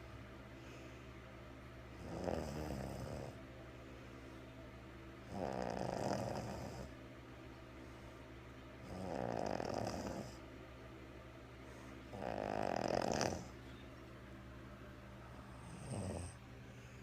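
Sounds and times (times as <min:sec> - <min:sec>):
woman snoring: 0:02.0 - 0:03.4, 0:05.3 - 0:06.9, 0:08.8 - 0:10.4, 0:12.1 - 0:13.6, 0:15.4 - 0:16.4.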